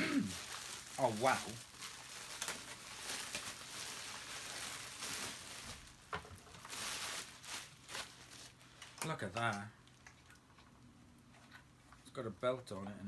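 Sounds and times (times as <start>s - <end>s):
plastic packaging crinkling: 0.0s - 10.3s.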